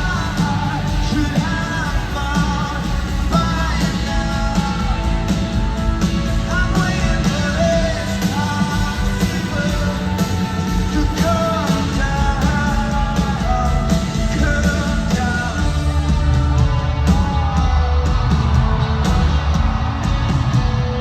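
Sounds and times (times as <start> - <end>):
live rock band playing: 0.0 - 21.0
person singing: 6.3 - 19.3.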